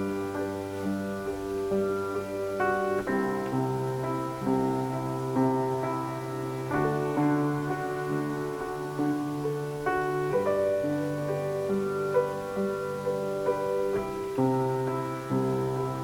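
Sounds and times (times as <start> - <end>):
keyboard playing slow chords: 0.0 - 16.0.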